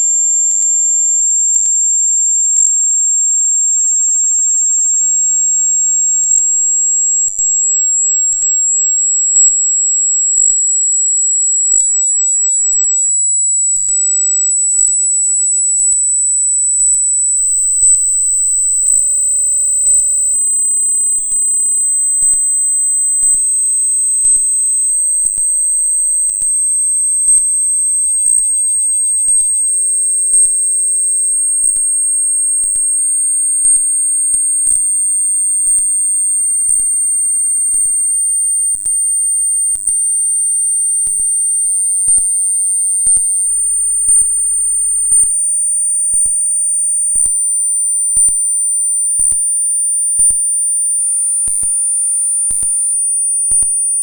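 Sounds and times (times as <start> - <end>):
faint ticks: 25.2 - 25.6, 29.2 - 54.0.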